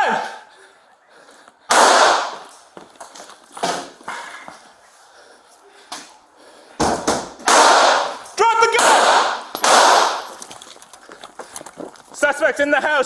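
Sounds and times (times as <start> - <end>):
loud echoing bang: 1.7 - 2.5, 6.8 - 10.4.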